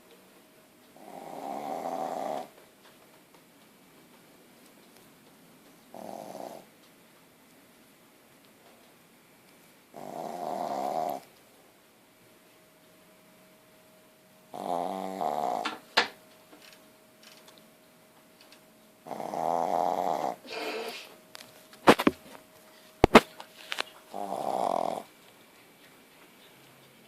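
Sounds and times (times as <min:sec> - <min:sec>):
puppy snoring: 0:00.9 - 0:02.6, 0:05.9 - 0:06.7, 0:09.9 - 0:11.3, 0:14.5 - 0:15.9, 0:19.0 - 0:21.1, 0:24.0 - 0:25.2.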